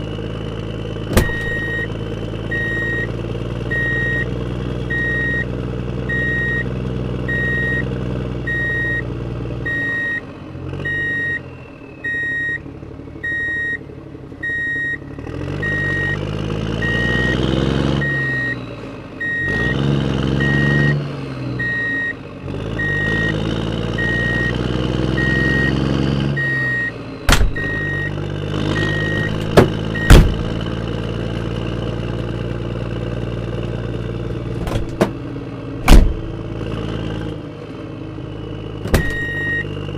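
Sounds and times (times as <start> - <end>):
reversing beeper: 1.2 - 3.1, 10.9 - 13.8, 19.2 - 21.0, 24.0 - 27.0, 27.6 - 30.2, 39.0 - 39.8.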